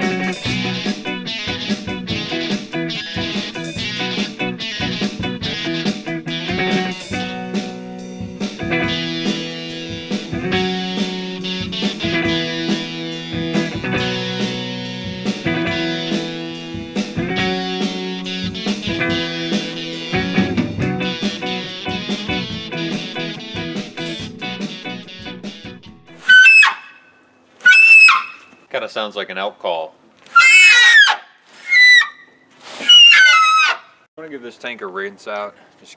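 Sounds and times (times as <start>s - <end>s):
guitar music with drums: 0.0s - 26.3s.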